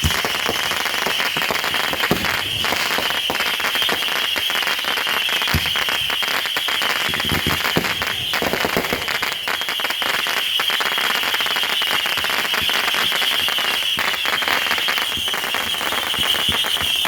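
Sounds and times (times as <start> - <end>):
deep firework booms: 0.0 - 4.1, 5.4 - 9.8
fireworks crackling: 0.0 - 17.0.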